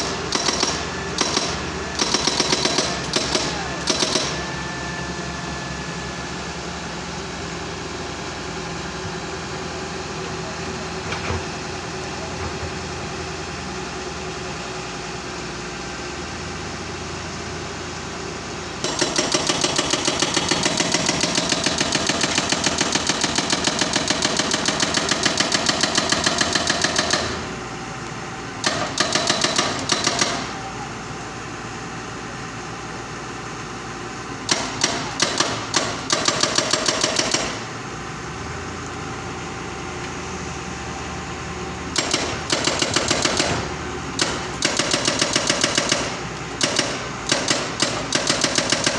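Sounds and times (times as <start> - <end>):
hydraulic breaker hammering concrete: 0.0 - 4.8, 18.8 - 27.8, 28.6 - 30.7, 34.4 - 37.8, 41.9 - 48.9
diesel engine running: 0.0 - 48.9.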